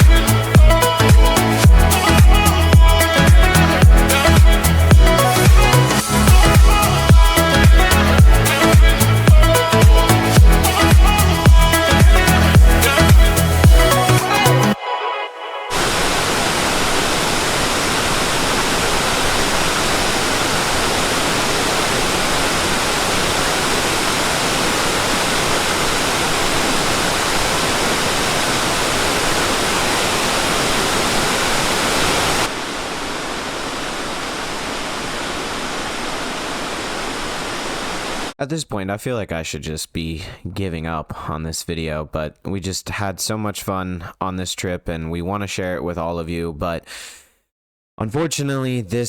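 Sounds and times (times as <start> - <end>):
waterfall rushing: 0.0 - 14.8, 15.7 - 38.3
background music: 0.0 - 15.8.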